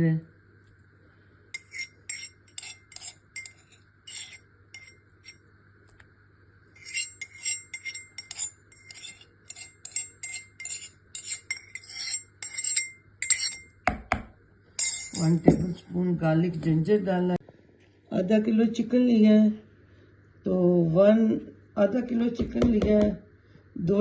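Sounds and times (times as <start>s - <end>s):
spoon clinking against bowl: 1.6s - 5.4s, 6.8s - 13.9s, 14.8s - 15.7s.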